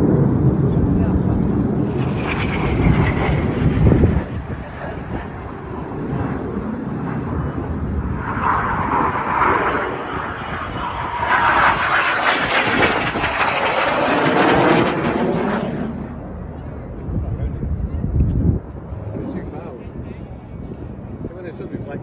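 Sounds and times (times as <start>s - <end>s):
aircraft flying past: 0.0s - 17.5s.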